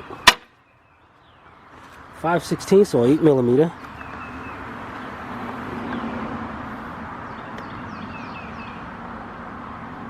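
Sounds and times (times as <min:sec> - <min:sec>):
bird chirping: 0:00.0 - 0:01.7, 0:02.9 - 0:05.2, 0:07.2 - 0:08.9.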